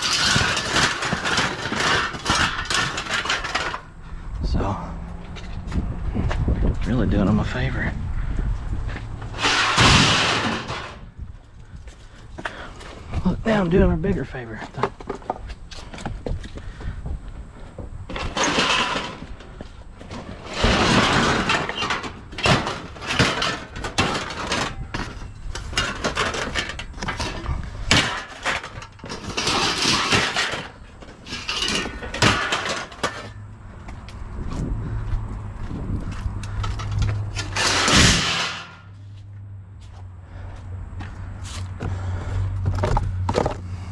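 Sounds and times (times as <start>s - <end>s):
trash rustling: 0.0s - 4.1s, 8.9s - 16.8s, 17.6s - 34.7s, 35.6s - 39.2s
trash clattering and crashing: 0.0s - 5.8s, 8.9s - 11.4s, 17.7s - 34.7s, 35.6s - 39.0s.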